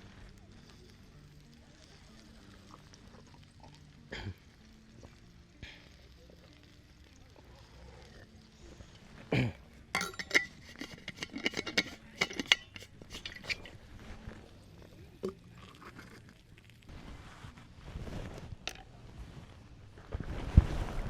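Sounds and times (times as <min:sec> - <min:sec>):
metal cookware clinking: 0:10.0 - 0:13.8.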